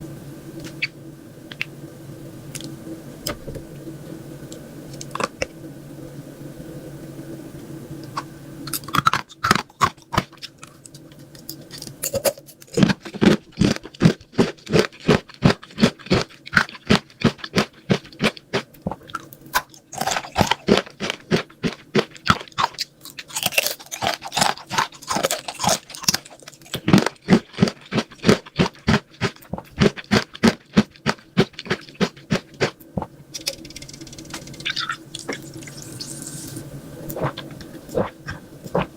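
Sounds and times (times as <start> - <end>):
crunchy chewing of sweets: 8.7 - 33.1, 37.1 - 38.9.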